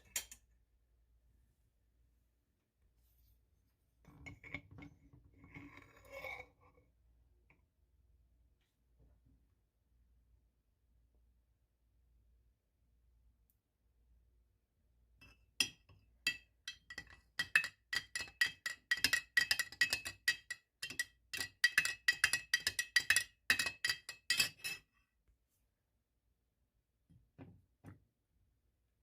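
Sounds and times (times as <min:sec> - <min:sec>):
spoon clinking against cup: 0:15.2 - 0:24.9.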